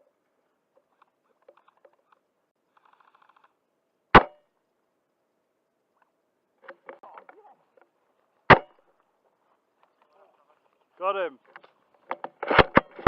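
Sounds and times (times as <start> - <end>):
airsoft rifle shots: 4.2 - 4.4, 8.5 - 8.8.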